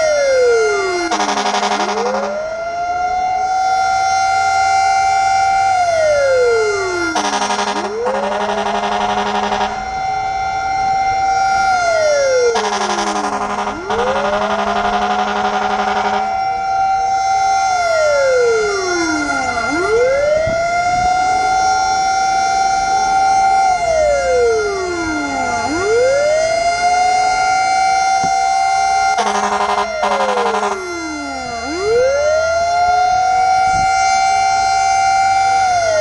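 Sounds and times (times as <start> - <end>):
fire truck siren wailing: 0.0 - 36.0
short horn blasts: 29.2 - 30.8.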